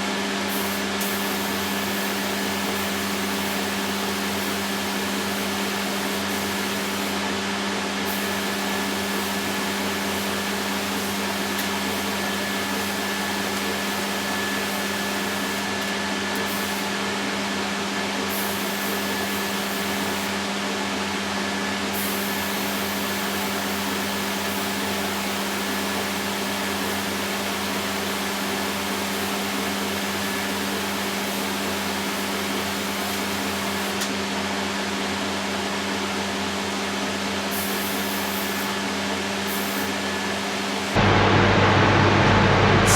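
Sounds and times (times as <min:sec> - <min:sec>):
machine motor humming with hiss: 0:41.0 - 0:42.9.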